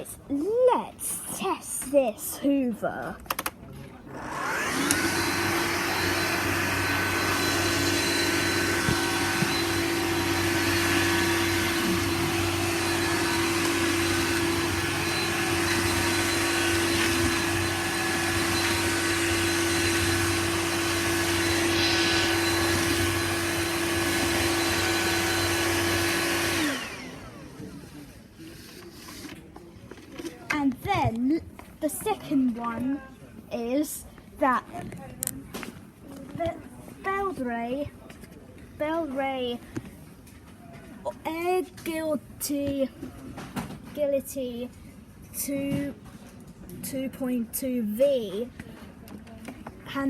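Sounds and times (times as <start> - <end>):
vacuum cleaner motor whine: 4.1 - 28.2.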